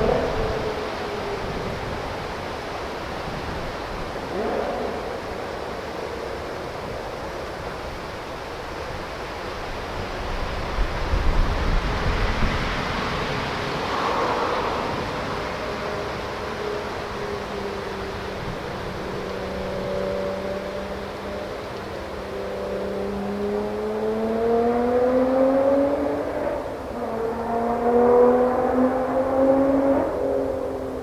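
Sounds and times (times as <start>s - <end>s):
wind noise on microphone: 0.0s - 20.0s
distant car engine: 0.0s - 31.0s.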